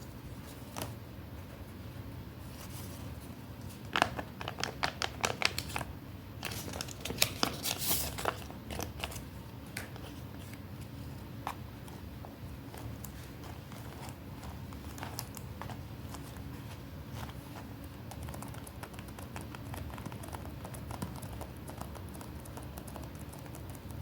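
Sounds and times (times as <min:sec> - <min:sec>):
paper crinkling and rustling: 0:02.4 - 0:12.0, 0:12.6 - 0:17.8.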